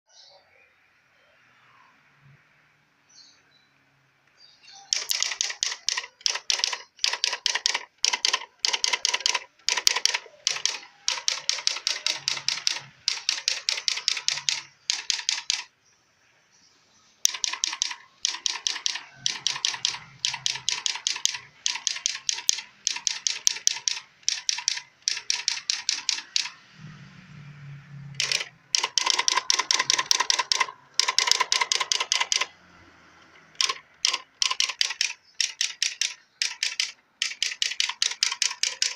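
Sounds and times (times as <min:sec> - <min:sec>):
electronic typewriter clicking: 0:04.9 - 0:15.7, 0:17.2 - 0:26.7, 0:28.2 - 0:32.6, 0:33.4 - 0:38.9.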